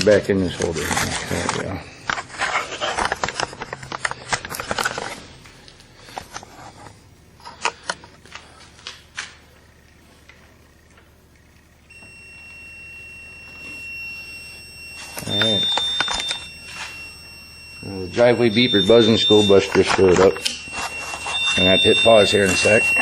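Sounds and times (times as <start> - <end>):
high-pitched alert beeper tone: 15.0 - 23.0.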